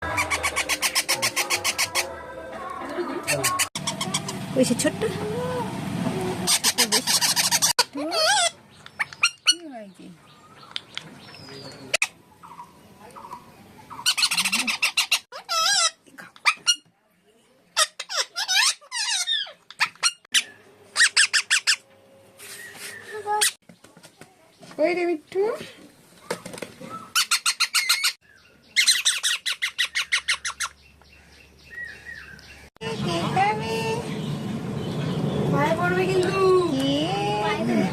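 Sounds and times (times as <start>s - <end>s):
parakeet chirping and squawking: 0.0s - 2.2s, 3.2s - 4.5s, 6.4s - 9.6s, 12.0s - 16.8s, 17.8s - 21.8s, 26.8s - 28.2s, 28.8s - 31.0s
parrot calling harsh repeated notes: 0.0s - 2.2s, 3.3s - 4.4s, 17.8s - 21.8s.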